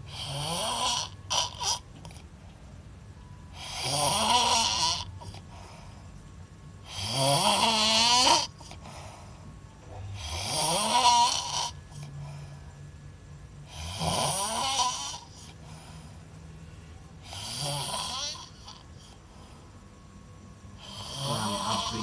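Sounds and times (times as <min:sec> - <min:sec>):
person snoring: 0:00.1 - 0:02.2, 0:03.5 - 0:05.6, 0:06.8 - 0:09.1, 0:10.2 - 0:12.2, 0:13.6 - 0:15.8, 0:17.2 - 0:19.2, 0:20.8 - 0:22.0.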